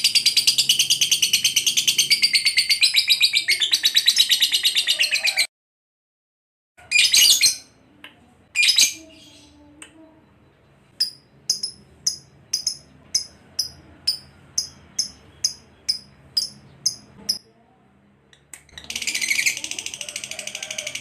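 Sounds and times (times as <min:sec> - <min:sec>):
bird chirping: 0:00.0 - 0:05.4, 0:06.8 - 0:21.0
bird buzzy trill: 0:11.0 - 0:17.4.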